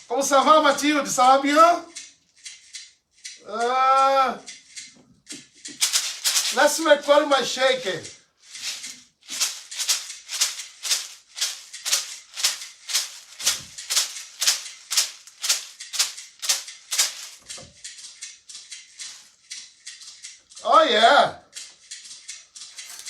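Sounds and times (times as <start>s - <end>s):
homemade shaker rattling: 4.4s - 20.4s, 21.8s - 23.0s.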